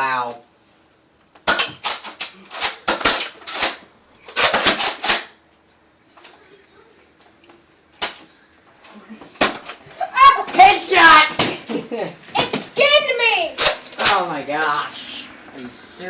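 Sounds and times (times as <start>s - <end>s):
plastic toy blaster clacks: 1.4s - 5.4s, 13.6s - 14.3s.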